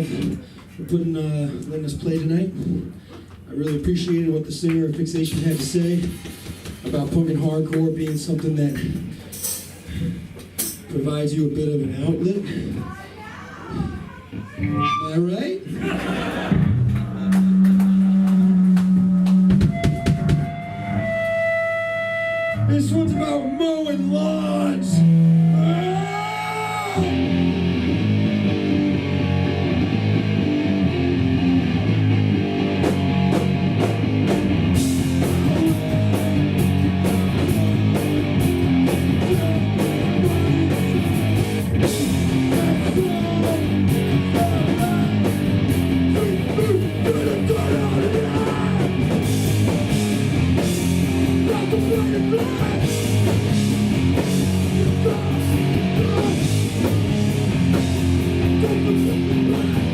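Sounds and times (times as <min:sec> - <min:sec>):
punk band playing live: 0:05.2 - 0:07.5, 0:16.0 - 0:22.6, 0:24.8 - 0:59.9.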